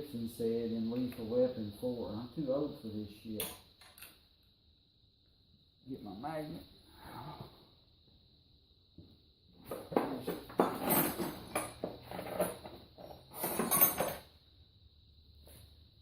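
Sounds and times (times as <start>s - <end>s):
metal hand tools clattering: 10.4s - 14.3s.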